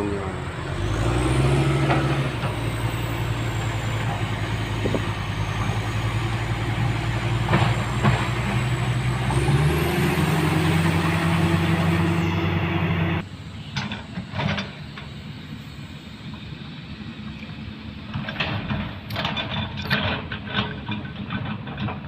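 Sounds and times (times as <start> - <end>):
diesel engine running: 0.0 - 22.0.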